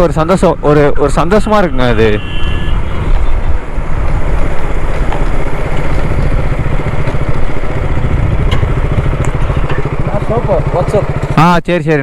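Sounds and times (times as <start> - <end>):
motorcycle engine running: 3.6 - 11.7.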